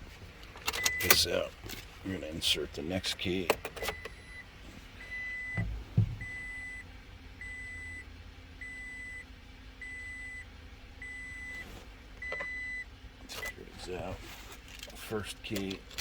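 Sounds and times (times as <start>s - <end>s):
low thumps: 5.5s - 6.4s.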